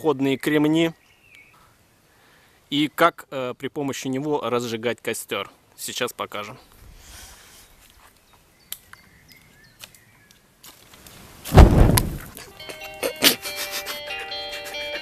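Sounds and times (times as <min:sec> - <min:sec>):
campfire whoosh: 0:11.1 - 0:12.4
music: 0:12.5 - 0:15.0.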